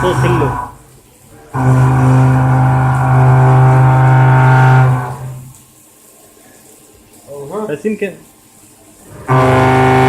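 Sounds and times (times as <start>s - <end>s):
milling machine motor hum: 0.0s - 5.5s, 9.1s - 10.0s.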